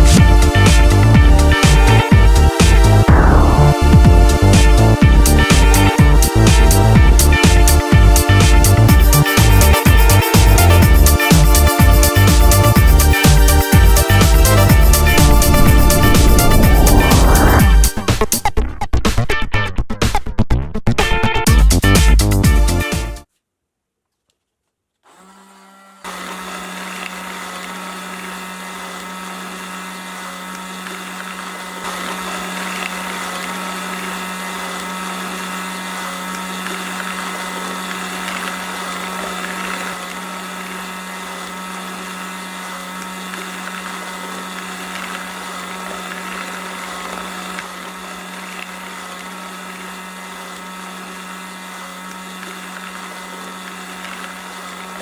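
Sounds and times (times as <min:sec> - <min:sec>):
small motor humming: 0:00.0 - 0:18.5, 0:25.0 - 0:55.0.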